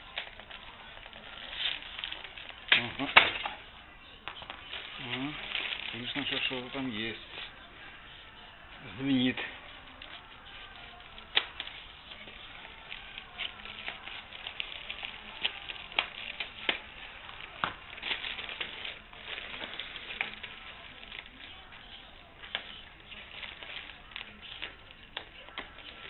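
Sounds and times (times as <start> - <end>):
wrapping rustling and crackling: 0.0 - 26.0
packaging clicks and snaps: 9.4 - 21.5.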